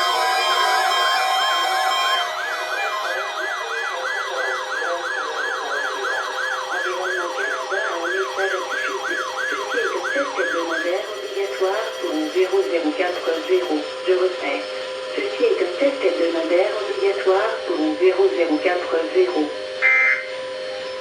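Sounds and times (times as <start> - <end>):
electronic siren yelping: 0.0 - 21.0
high warbling tone: 0.0 - 21.0.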